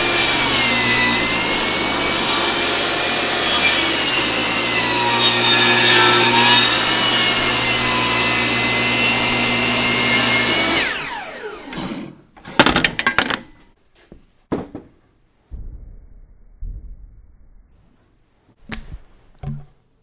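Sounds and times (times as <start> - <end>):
table saw cutting wood: 0.0 - 13.0.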